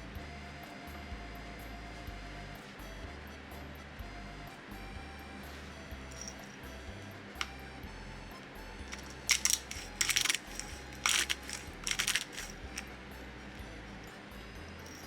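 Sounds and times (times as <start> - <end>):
soft background music: 0.0 - 15.0
clinking and clattering: 6.1 - 6.6, 8.9 - 12.9.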